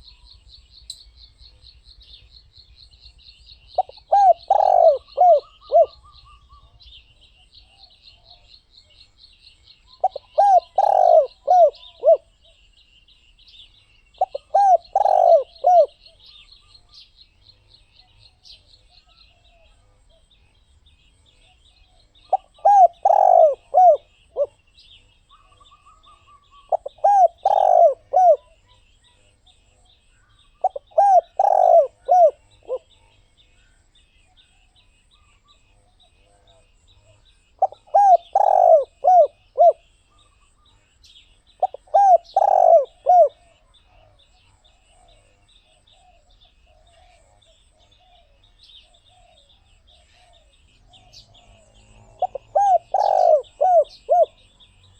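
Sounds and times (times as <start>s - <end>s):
dove cooing: 3.8s - 6.8s, 10.0s - 12.6s, 14.2s - 16.4s, 22.2s - 24.6s, 25.3s - 28.8s, 30.6s - 33.0s, 36.3s - 40.8s, 41.6s - 54.9s.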